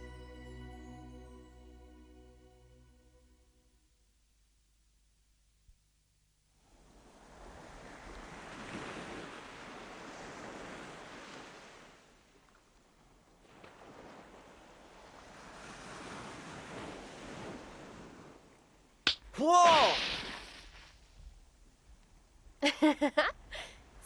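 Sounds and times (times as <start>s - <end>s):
ocean waves breaking on shore: 6.7s - 12.4s, 13.0s - 21.0s.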